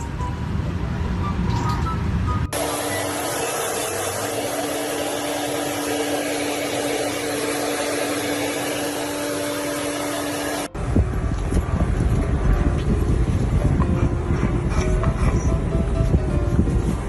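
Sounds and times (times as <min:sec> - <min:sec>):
small appliance motor humming: 0:02.6 - 0:10.7.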